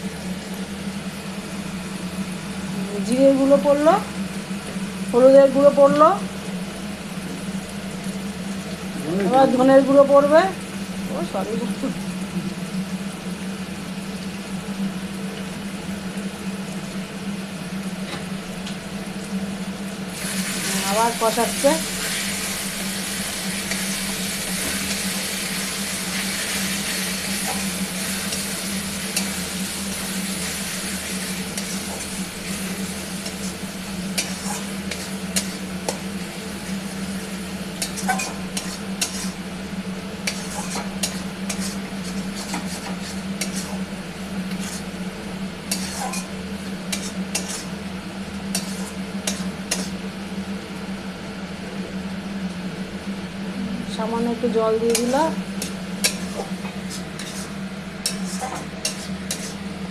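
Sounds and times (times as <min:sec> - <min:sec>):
spices sizzling in oil: 0:00.0 - 0:51.4, 0:53.9 - 0:59.9
spatula scraping a pan: 0:26.2 - 0:36.0, 0:37.8 - 0:39.4, 0:40.2 - 0:43.9, 0:44.5 - 0:45.0, 0:45.7 - 0:47.8, 0:48.5 - 0:50.0, 0:54.9 - 0:59.6.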